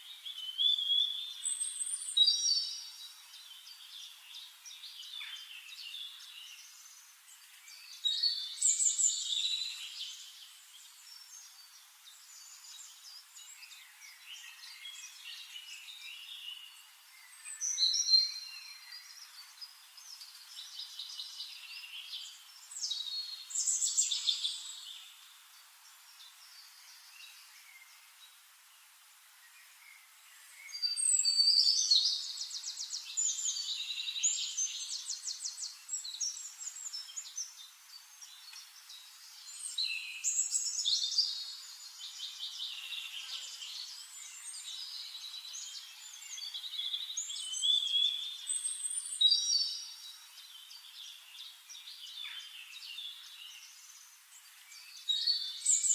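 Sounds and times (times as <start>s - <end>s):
faint hiss: 0.0s - 55.9s
songbirds chirping: 0.0s - 55.9s.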